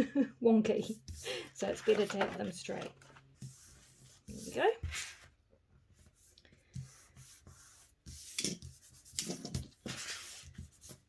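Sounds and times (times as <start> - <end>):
cardstock rubbed and rustling: 0.9 - 5.3, 7.0 - 11.0.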